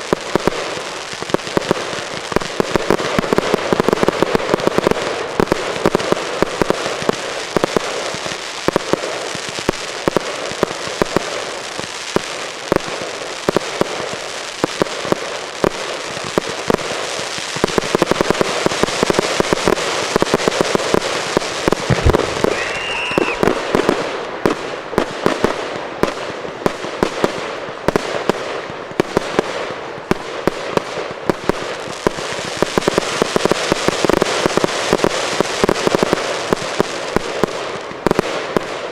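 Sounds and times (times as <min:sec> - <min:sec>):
fireworks crackling and popping: 0:00.0 - 0:38.9
firework boom: 0:21.8 - 0:23.8.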